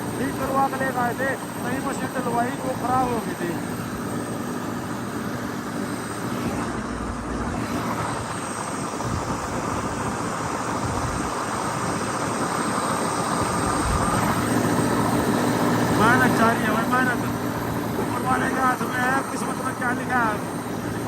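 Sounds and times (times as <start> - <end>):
tractor diesel engine running: 0.6 - 21.0
road and wind noise: 3.7 - 16.0.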